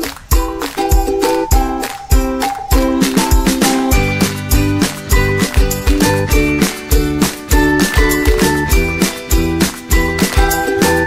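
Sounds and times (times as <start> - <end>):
upbeat children's music: 0.0 - 11.0.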